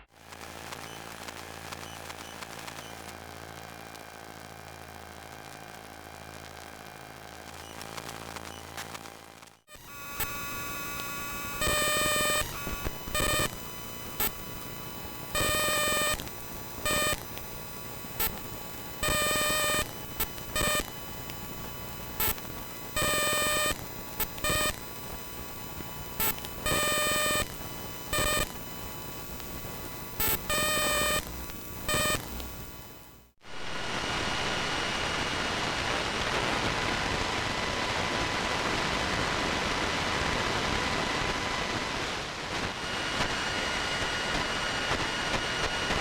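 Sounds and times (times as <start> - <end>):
loud buzzing tones: 9.7 - 34.7.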